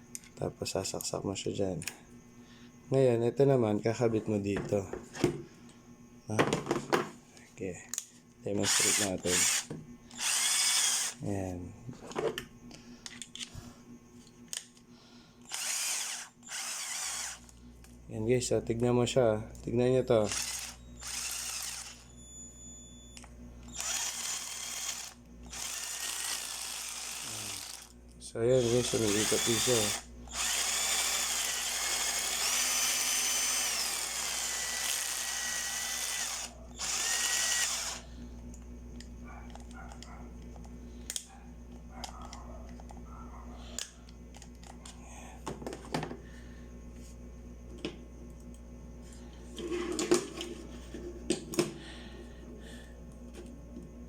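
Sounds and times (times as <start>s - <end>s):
steady low hum: 0.0s - 54.0s
cordless drill motor whirring: 8.6s - 11.3s, 15.4s - 17.6s, 20.2s - 38.1s.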